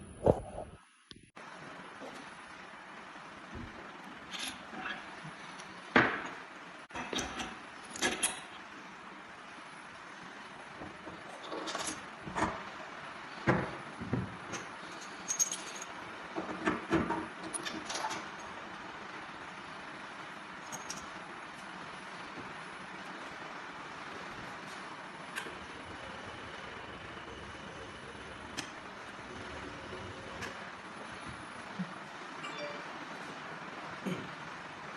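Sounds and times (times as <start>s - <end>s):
metal parts clicking and clinking: 11.4s - 12.5s, 14.5s - 16.0s, 20.6s - 21.2s.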